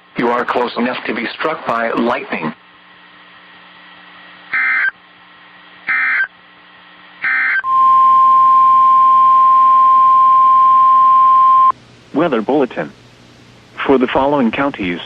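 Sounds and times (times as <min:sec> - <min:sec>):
loud steady alarm tone: 0:07.2 - 0:11.7.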